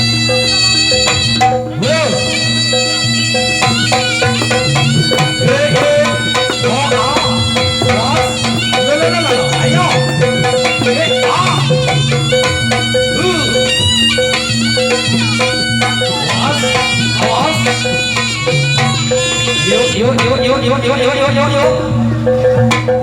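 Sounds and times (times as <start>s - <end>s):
drum strokes: 0.0s - 20.5s
reedy wind melody: 0.0s - 23.0s.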